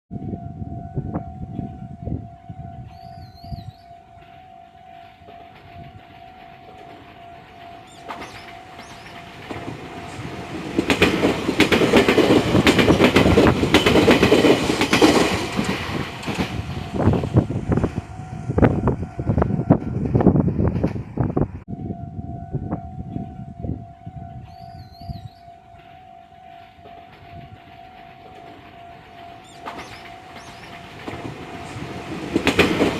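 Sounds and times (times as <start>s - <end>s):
level-crossing alarm ringing: 0.1s - 20.4s, 21.7s - 32.9s
electric train passing: 0.1s - 32.9s
wheels clattering over rail joints: 4.2s - 18.0s, 25.8s - 32.9s.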